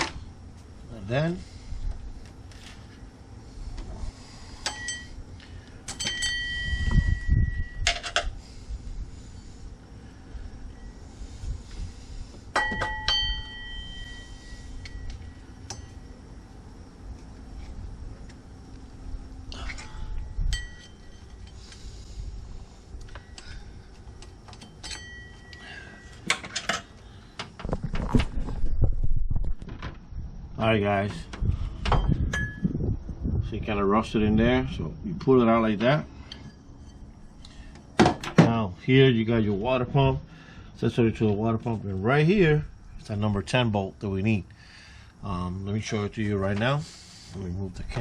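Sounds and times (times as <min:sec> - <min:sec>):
metal ringing tone: 0:04.6 - 0:05.3, 0:05.9 - 0:08.2, 0:10.7 - 0:11.2, 0:12.5 - 0:16.4, 0:19.8 - 0:21.7, 0:24.6 - 0:26.3, 0:31.9 - 0:32.8, 0:36.2 - 0:37.4
metal tools clinking: 0:05.9 - 0:08.3, 0:20.4 - 0:21.8, 0:24.2 - 0:26.9.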